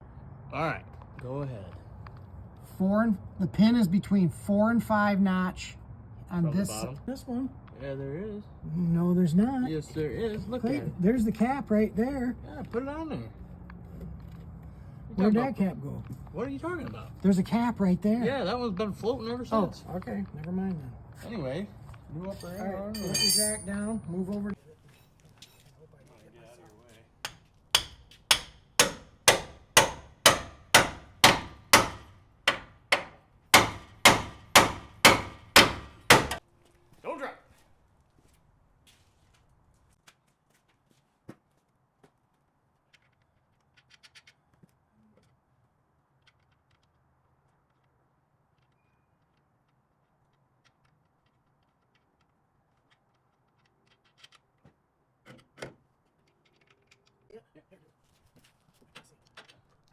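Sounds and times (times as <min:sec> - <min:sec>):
hammer striking steel: 0:22.4 - 0:23.8, 0:27.2 - 0:36.4
loud knocks: 0:27.8 - 0:36.4.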